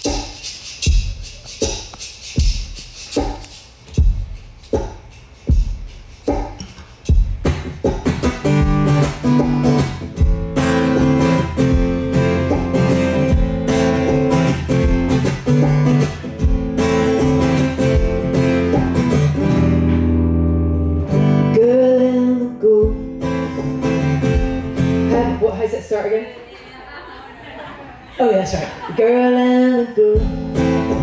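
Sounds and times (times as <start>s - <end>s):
acoustic guitar strumming: 6.3s - 25.7s, 29.0s - 31.0s.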